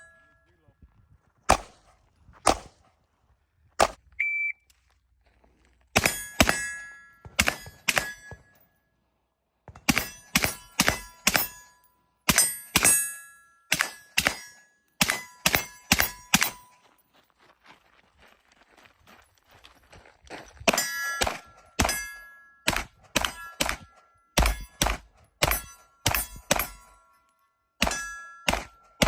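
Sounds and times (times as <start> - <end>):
gunshots: 1.5 - 2.8, 6.0 - 8.5, 9.7 - 11.6, 13.7 - 16.6, 20.7 - 22.1, 22.7 - 26.9, 27.8 - 29.0
shot timer beep: 4.2 - 4.7
steel target ringing: 6.0 - 8.6, 9.9 - 16.7, 20.7 - 27.2, 27.8 - 29.0.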